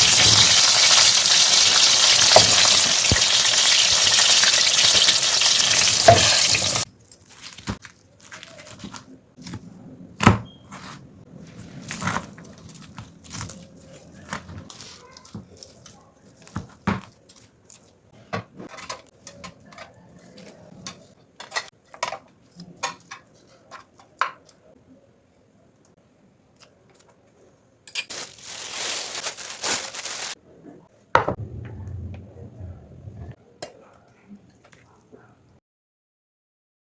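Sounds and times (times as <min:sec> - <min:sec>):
utensils and dishes clinking: 0:00.0 - 0:07.2.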